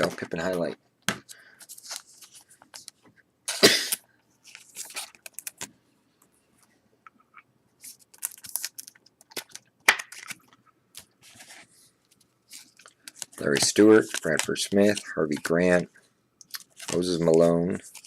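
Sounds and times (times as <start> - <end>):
trading cards rustling: 0.0 - 3.1, 4.4 - 5.7, 7.8 - 15.9, 16.5 - 18.0.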